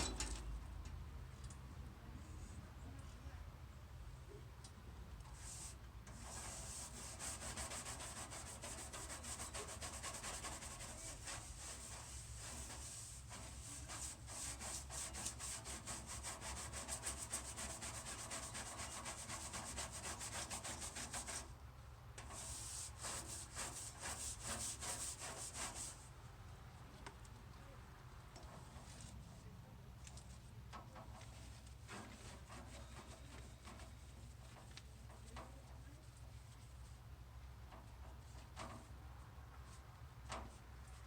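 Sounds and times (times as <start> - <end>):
hand sanding wood: 6.2 - 21.5, 22.2 - 26.0.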